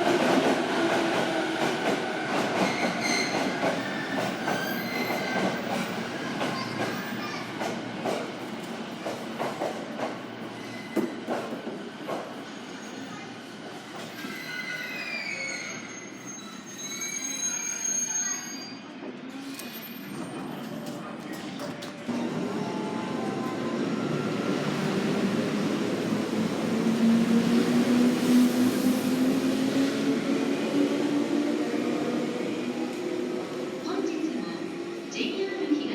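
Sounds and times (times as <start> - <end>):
train wheels clicking on rails: 0.0 - 12.4.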